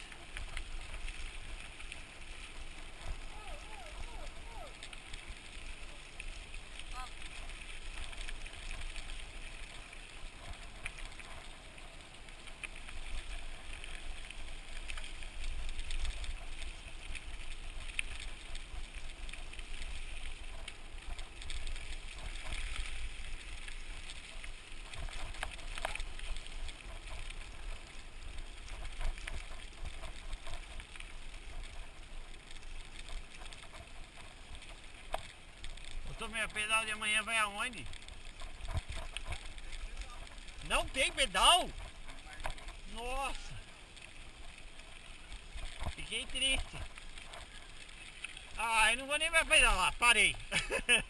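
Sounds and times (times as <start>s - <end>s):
tyres on gravel: 0.0s - 51.0s
bike clicks and rattles: 37.8s - 40.7s.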